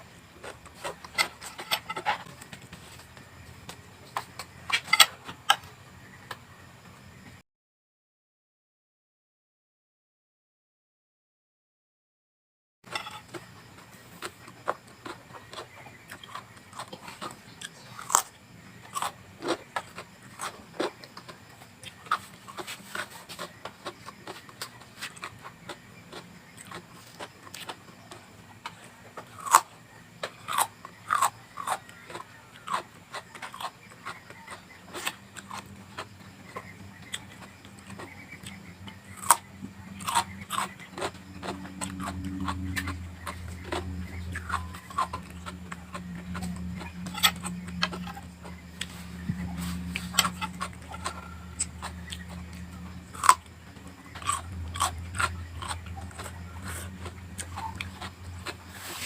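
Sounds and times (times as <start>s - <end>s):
chewing crunchy vegetables: 0.0s - 6.5s, 12.9s - 59.0s
low steady hum: 12.9s - 59.0s.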